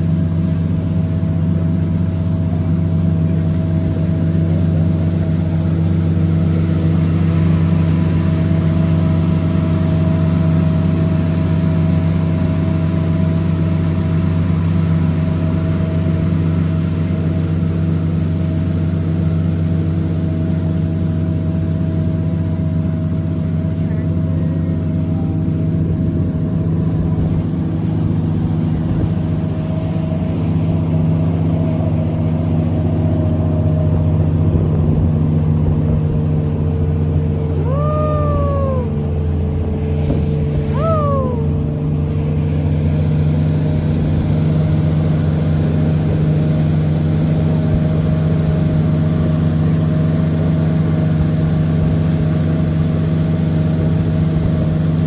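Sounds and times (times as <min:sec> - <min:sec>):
engine droning: 0:21.3 - 0:55.0
high cries: 0:37.6 - 0:39.1, 0:40.7 - 0:41.6.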